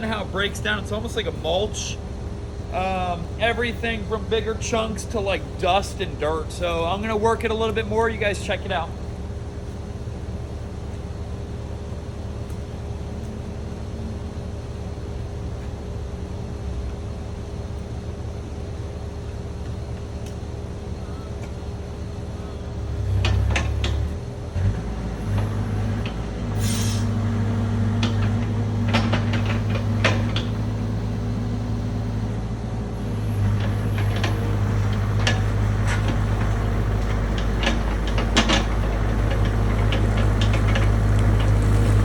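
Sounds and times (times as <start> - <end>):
excavator diesel engine running: 0.0 - 42.0
short hiss: 26.6 - 27.1.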